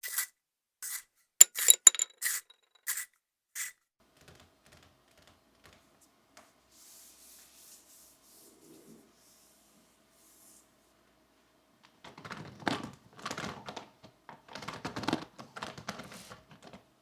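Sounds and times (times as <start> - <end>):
pencils clinking and scraping: 1.4 - 2.5.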